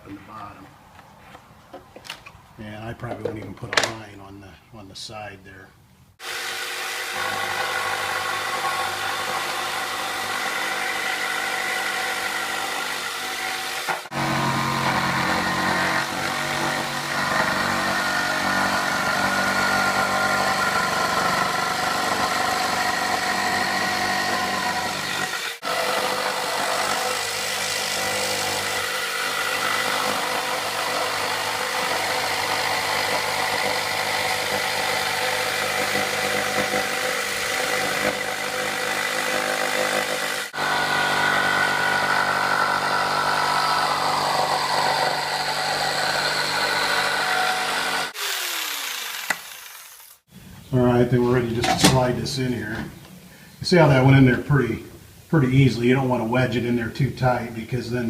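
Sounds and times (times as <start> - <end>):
saber saw cutting wood: 6.2 - 50.3.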